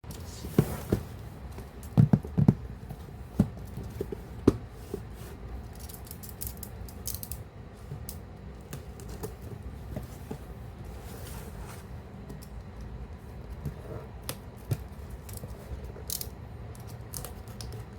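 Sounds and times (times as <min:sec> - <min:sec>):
knocks and taps on box: 0:01.9 - 0:04.6.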